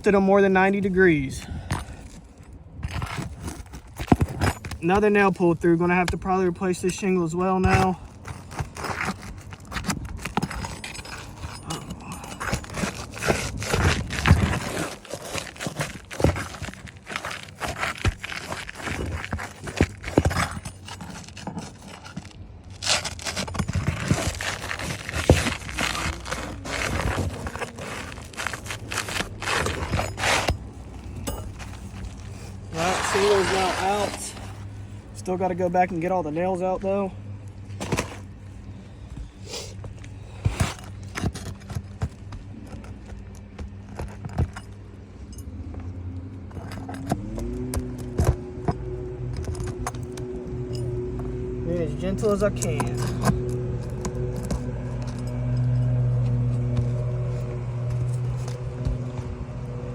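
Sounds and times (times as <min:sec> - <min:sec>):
steady low hum: 0:00.0 - 0:59.9
roof shingles scraping and tearing: 0:02.8 - 0:34.7.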